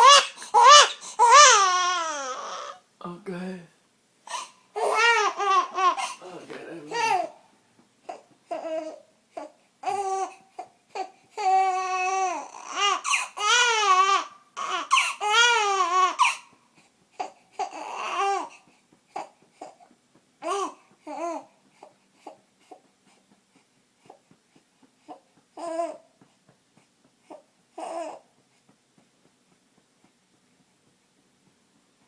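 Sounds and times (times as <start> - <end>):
baby whimpering and crying: 0.0 - 2.9, 4.2 - 7.4, 8.0 - 23.2, 25.1 - 26.3, 27.2 - 28.4.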